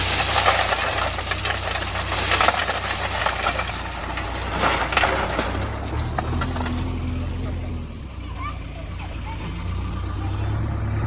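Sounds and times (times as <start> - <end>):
stone scraping and clattering: 0.0 - 7.7
heavy diesel engine running: 0.0 - 11.0.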